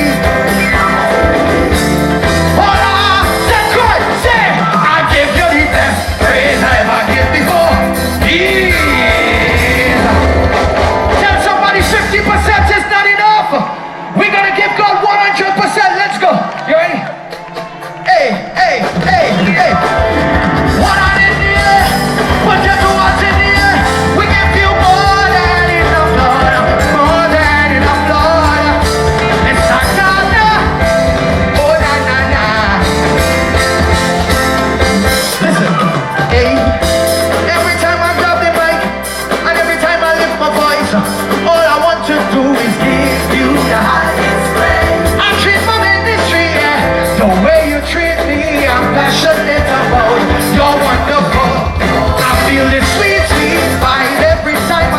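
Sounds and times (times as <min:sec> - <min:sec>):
person singing: 0:00.0 - 0:12.4, 0:17.8 - 0:54.9
live band playing soca: 0:00.0 - 0:54.9.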